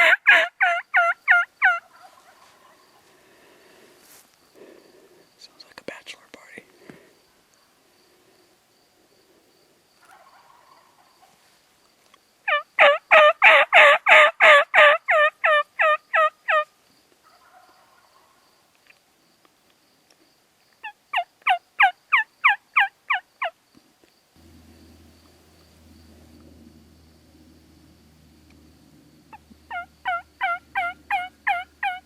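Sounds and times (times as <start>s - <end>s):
turkey yelps: 0.0s - 2.8s, 10.0s - 11.3s, 12.5s - 16.7s, 20.8s - 23.5s, 29.3s - 32.0s.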